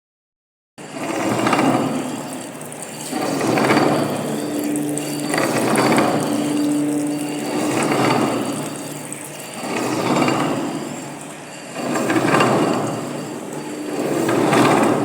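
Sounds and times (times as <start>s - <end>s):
lathe cutting metal: 0.8s - 15.0s
steady hum: 0.8s - 15.0s.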